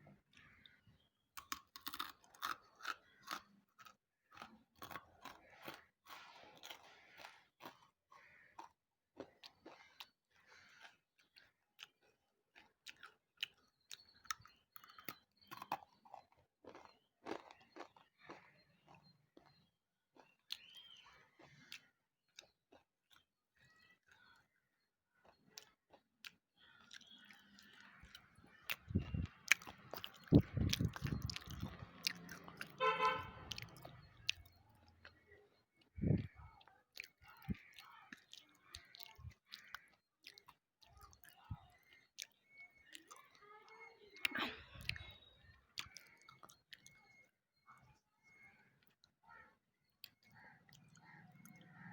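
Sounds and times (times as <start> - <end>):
chewing and crunching stone: 0.2 - 32.8, 33.4 - 49.2, 49.8 - 51.9
horn-like tone: 32.8 - 33.4.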